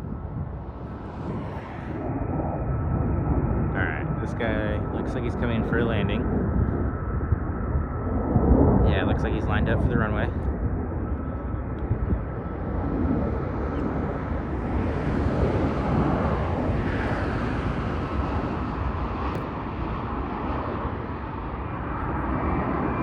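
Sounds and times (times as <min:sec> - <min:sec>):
fighter jet flying past: 0:00.0 - 0:23.0.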